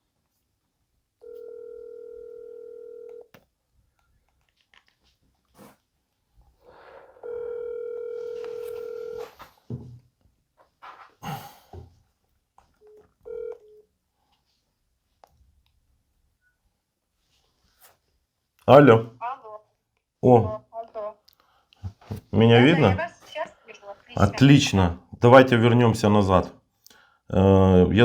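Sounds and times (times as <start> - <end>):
telephone ringing tone: 1.2 - 3.3, 7.2 - 9.4, 12.8 - 13.9.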